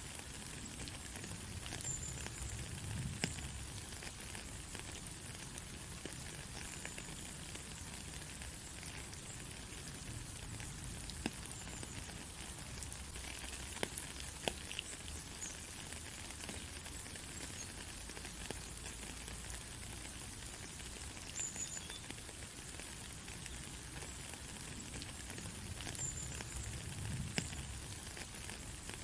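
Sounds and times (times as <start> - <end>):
steady rain hiss: 0.0 - 29.0
raindrop hits: 24.8 - 28.9.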